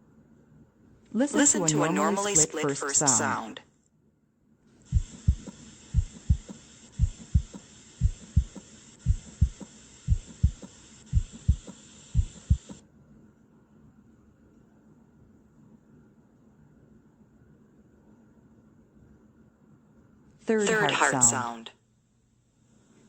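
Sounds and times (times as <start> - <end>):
heartbeat lub-dub: 4.9 - 12.8.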